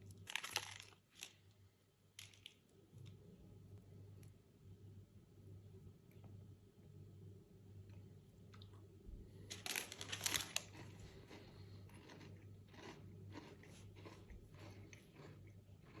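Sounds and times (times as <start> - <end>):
chewing crunches: 9.5 - 16.0.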